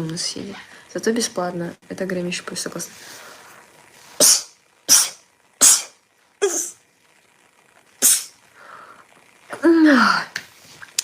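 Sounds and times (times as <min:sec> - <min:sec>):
woman sneezing: 0:04.2 - 0:06.8, 0:08.0 - 0:08.4.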